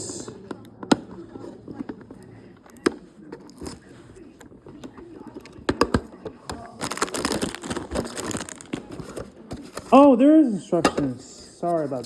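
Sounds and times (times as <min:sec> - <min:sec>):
paper and plastic crinkling: 0:01.4 - 0:10.2.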